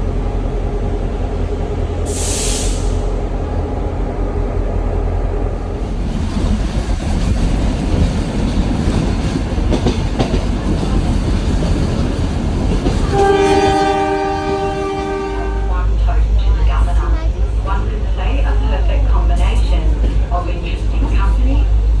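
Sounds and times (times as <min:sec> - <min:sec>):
train rumbling along track: 0:00.0 - 0:22.0
train horn blast: 0:13.0 - 0:15.9.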